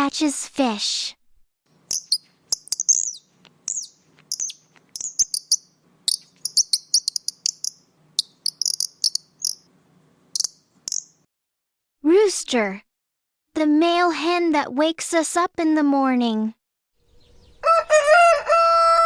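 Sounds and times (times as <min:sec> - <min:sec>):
kingfisher calling: 0:01.9 - 0:09.6.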